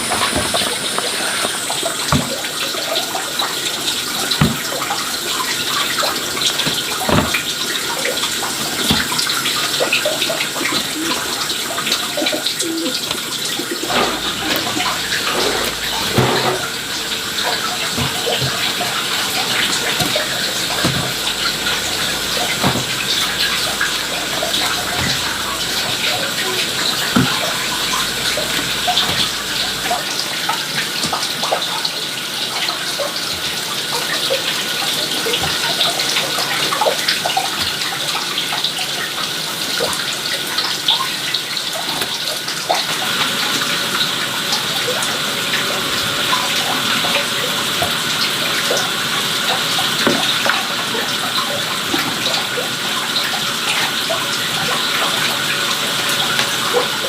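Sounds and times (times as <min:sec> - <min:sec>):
water running: 0:00.0 - 0:57.0
knocks and clatters: 0:04.2 - 0:11.3, 0:13.0 - 0:30.1.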